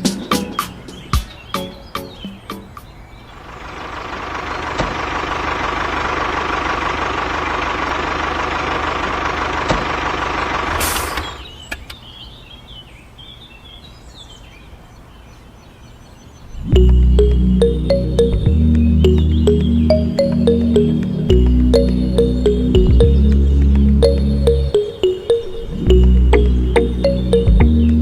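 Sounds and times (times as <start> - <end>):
faint high chirps: 16.6 - 28.0.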